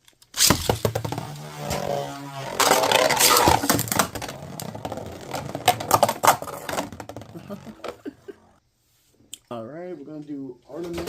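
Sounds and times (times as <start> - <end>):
spinning tops clashing: 2.6 - 4.2
rapid clicks and scraping: 2.6 - 7.0.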